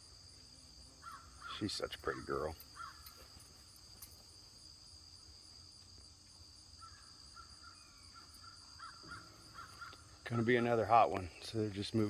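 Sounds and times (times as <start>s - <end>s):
insect chorus: 0.0s - 12.0s
bird calling: 6.8s - 10.8s.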